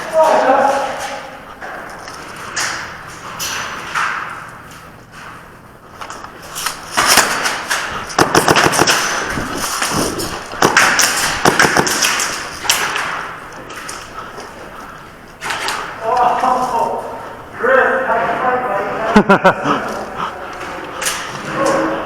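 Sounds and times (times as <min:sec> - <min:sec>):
airsoft guns firing: 0:07.0 - 0:13.3
bb hits and clatter: 0:08.2 - 0:12.4.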